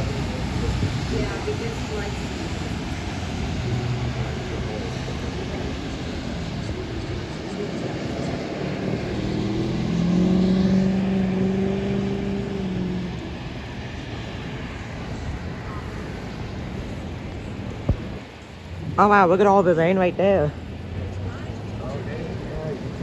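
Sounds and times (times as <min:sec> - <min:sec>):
motor vehicle passing: 0:00.0 - 0:23.0
steady rain: 0:00.0 - 0:23.0
wind: 0:00.0 - 0:23.0.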